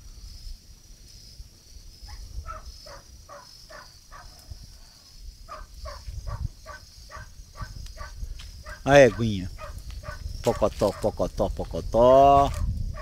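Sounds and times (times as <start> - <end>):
high-pitched insect drone: 0.0 - 13.0
dog barking: 2.1 - 4.3, 5.5 - 11.2.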